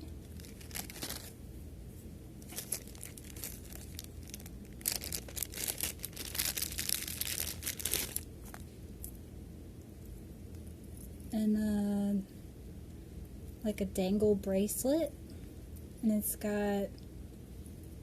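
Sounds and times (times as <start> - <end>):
packaging crinkling and tearing: 0.2 - 1.4, 2.4 - 8.6.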